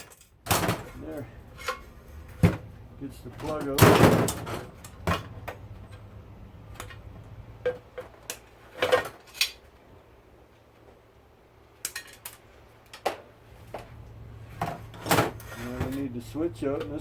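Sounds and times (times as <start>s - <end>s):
metallic clinks and knocks: 0.0s - 1.0s.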